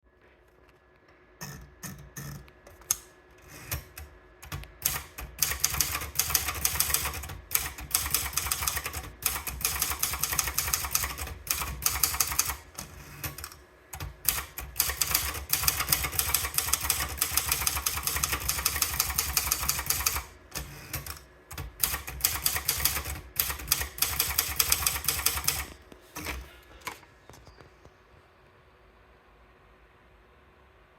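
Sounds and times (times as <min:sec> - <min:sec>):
typewriter keystrokes clacking: 0:03.7 - 0:12.6, 0:13.2 - 0:27.0.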